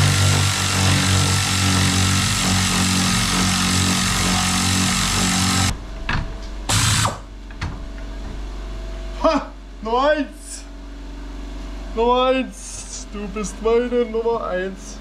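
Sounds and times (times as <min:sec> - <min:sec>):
impact wrench running: 0:00.0 - 0:05.7, 0:06.7 - 0:07.3.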